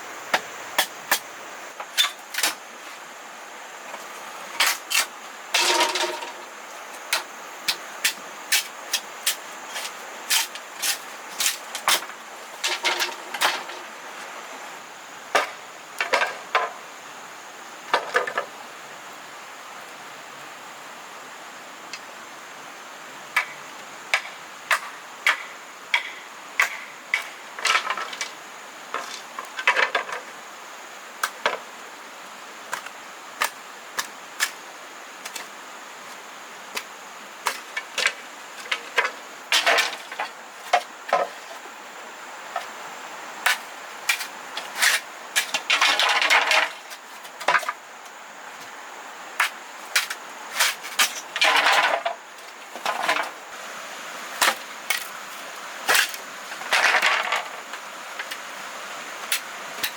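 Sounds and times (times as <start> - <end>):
rustling scrapes: 8.5 - 14.3, 43.5 - 47.5, 50.0 - 52.0.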